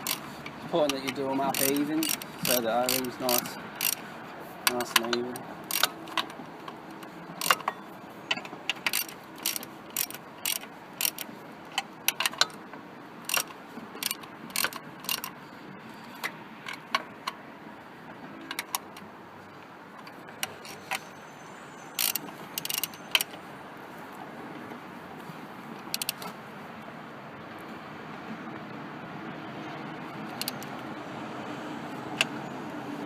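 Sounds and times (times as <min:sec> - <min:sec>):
ratchet wrench clicking: 0:00.0 - 0:04.0, 0:04.6 - 0:12.6, 0:13.2 - 0:15.4, 0:22.0 - 0:23.4, 0:25.9 - 0:26.3, 0:30.3 - 0:30.8.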